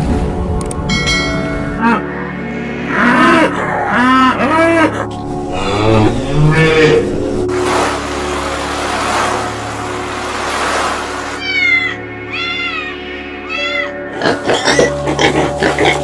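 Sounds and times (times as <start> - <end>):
cat meowing: 11.4 - 14.0.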